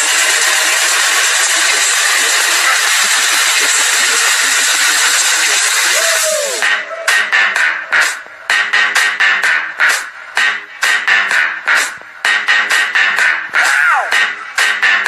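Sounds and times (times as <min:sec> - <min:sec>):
loud static hiss: 0:00.0 - 0:06.6.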